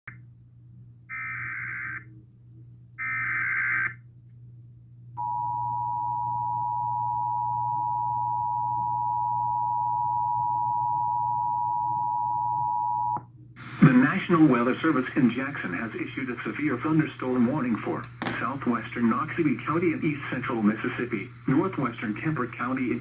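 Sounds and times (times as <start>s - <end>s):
buzzy data bursts: 13.6s - 23.0s.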